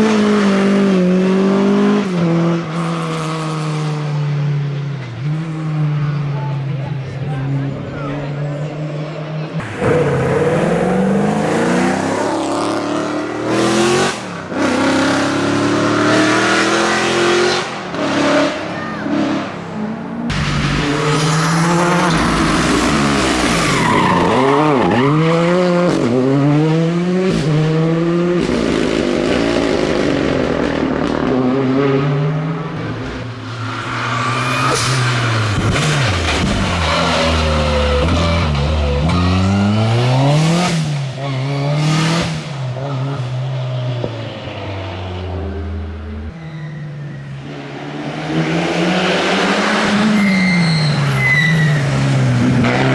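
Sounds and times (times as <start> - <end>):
rally car engines revving past: 0.0 - 52.9.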